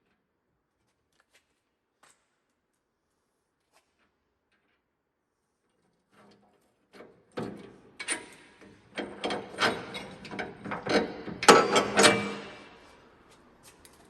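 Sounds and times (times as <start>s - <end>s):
hand tools clanking on metal: 7.4s - 12.8s.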